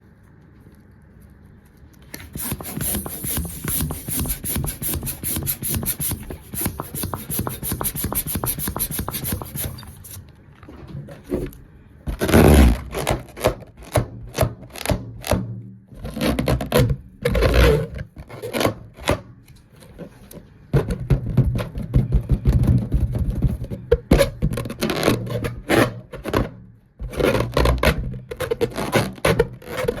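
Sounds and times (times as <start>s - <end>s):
rubbing and scraping strokes: 2.2s - 10.2s.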